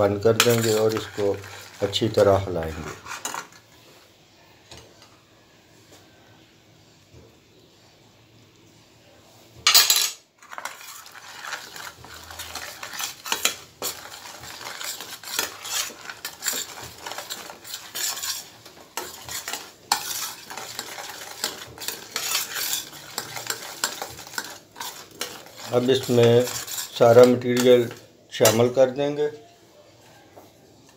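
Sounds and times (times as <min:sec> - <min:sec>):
spoon scraping a pan: 0:00.0 - 0:03.9, 0:09.8 - 0:29.6
light sizzle: 0:00.0 - 0:29.4.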